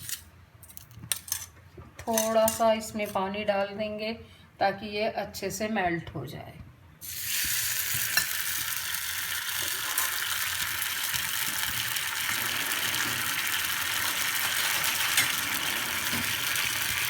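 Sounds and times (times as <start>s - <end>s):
sugar sizzling in hot fat: 7.0s - 17.0s
crackles: 7.4s - 17.0s.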